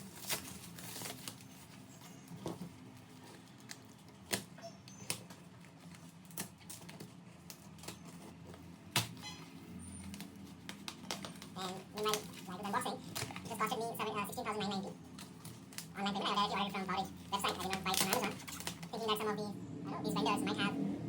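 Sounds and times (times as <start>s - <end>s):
cardboard packaging clicks and knocks: 2.3s - 9.2s, 10.0s - 12.4s.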